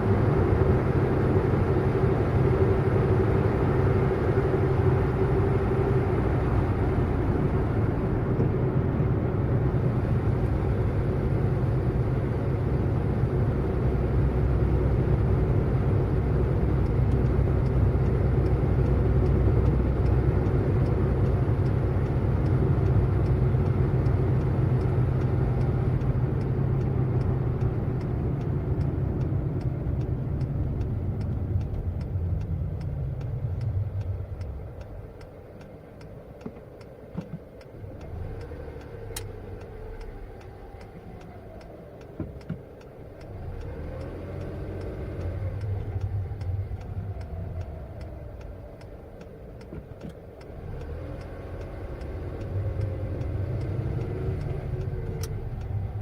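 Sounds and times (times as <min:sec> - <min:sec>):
car engine and road noise: 0:00.0 - 0:56.0
faint regular ticking: 0:15.2 - 0:56.0.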